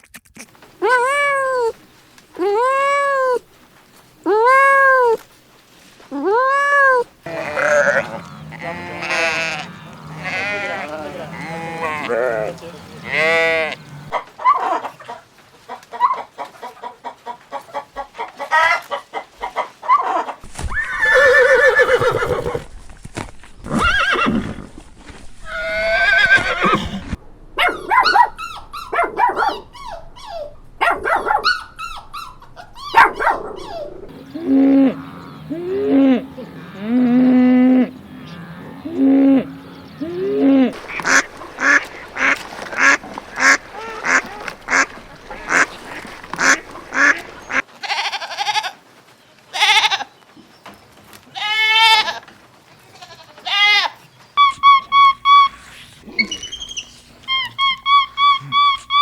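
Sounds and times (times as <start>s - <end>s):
farm animal calls: 6.0s - 22.7s, 25.4s - 48.7s, 52.9s - 59.0s.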